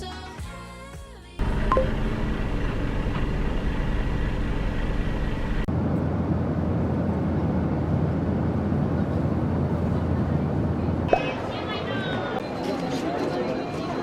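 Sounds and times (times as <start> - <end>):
vehicle rumbling in motion: 1.4 - 12.5.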